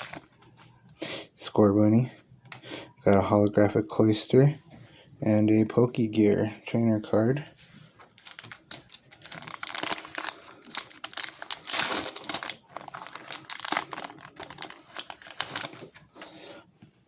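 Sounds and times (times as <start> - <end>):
foil wrapper crinkling: 8.2 - 16.3.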